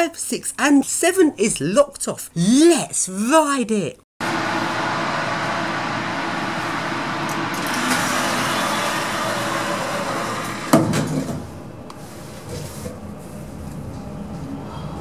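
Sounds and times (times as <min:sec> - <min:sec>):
lift humming: 0:04.2 - 0:15.0.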